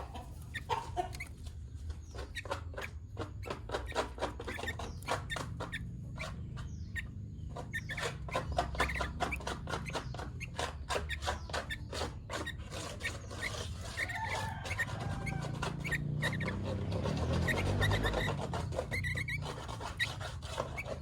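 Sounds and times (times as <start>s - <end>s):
bird chirping and whistling: 2.2s - 20.2s.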